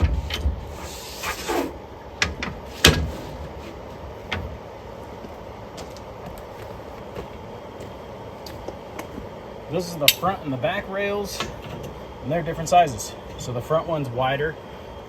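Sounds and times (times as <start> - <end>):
metal knocks and clanks: 2.2 - 4.6.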